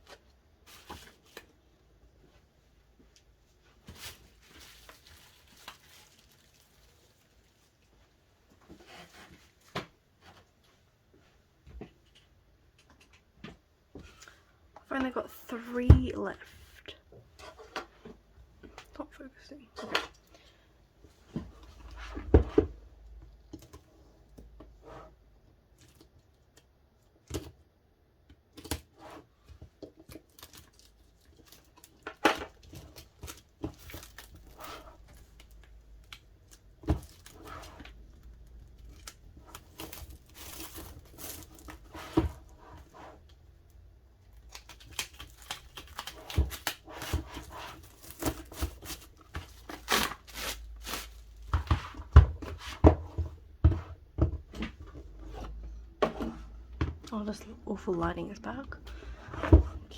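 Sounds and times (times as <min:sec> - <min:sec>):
clicks and knocks of handling: 0:11.7 - 0:14.9
packaging being torn open: 0:44.4 - 0:46.9.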